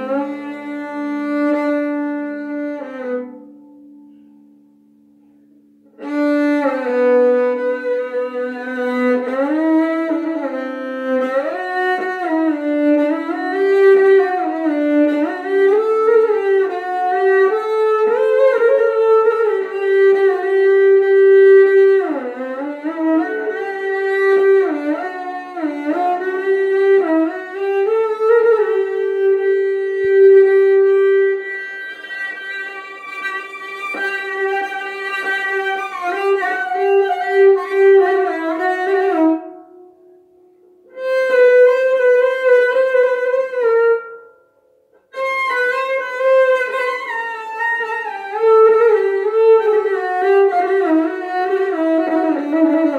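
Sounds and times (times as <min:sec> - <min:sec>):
solo bowed string melody: 0:00.0 - 0:52.9.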